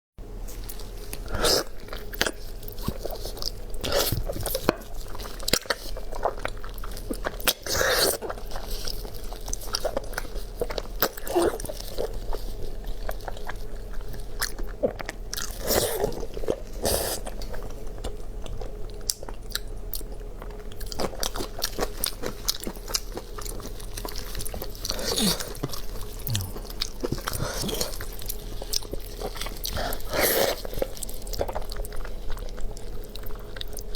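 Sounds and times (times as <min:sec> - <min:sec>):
person chewing crunchy food: 0:00.6 - 0:33.9
steady low hum: 0:22.9 - 0:33.6.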